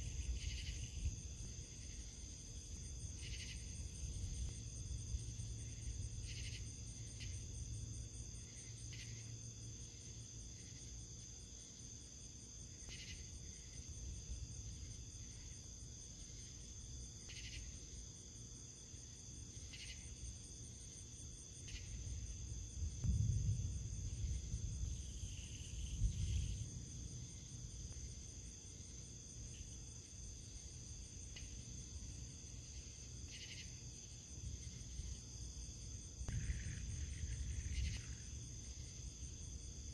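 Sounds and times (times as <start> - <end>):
crickets chirring: 0.0 - 39.9
low rumbles: 22.9 - 26.7, 36.3 - 38.6.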